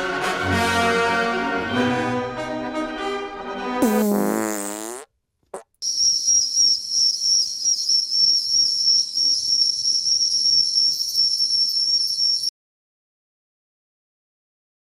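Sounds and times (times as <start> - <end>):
high-pitched whistle: 5.8 - 12.5.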